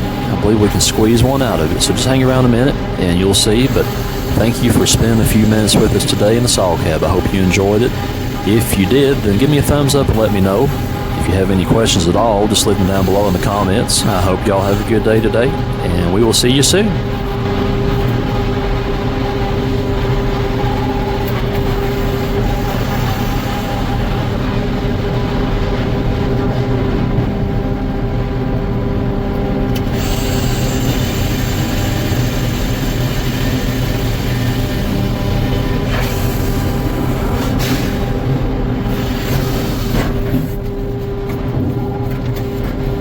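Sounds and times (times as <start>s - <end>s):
sawmill machinery humming: 0.0s - 43.0s
high hiss: 0.1s - 16.8s.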